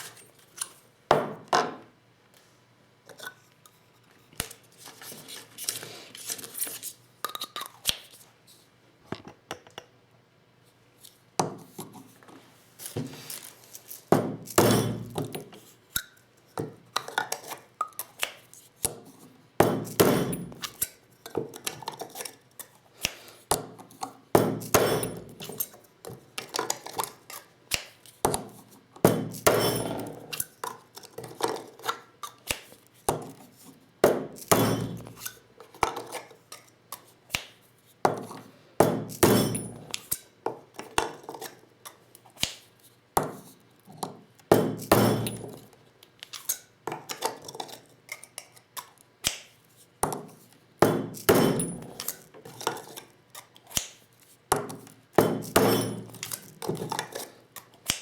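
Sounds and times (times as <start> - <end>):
metal parts and hulls clinking: 39.1 - 40.0, 55.4 - 56.5.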